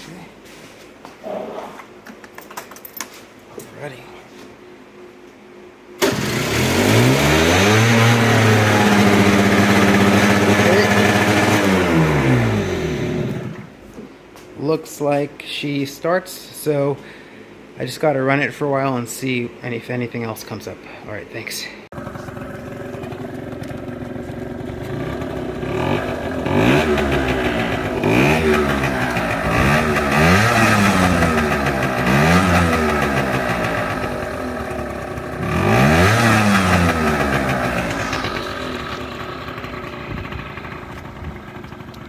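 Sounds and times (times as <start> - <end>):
scooter engine idling and revving: 6.0 - 13.7, 21.9 - 42.0.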